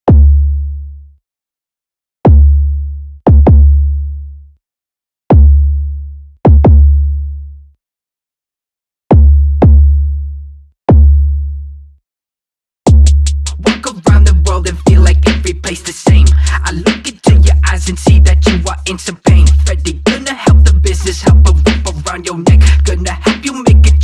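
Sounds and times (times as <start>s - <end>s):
drum machine bass drum hits: 3.3s - 3.7s, 6.5s - 6.9s, 12.9s - 18.7s, 19.3s - 24.0s
electronic beat: 12.9s - 24.0s.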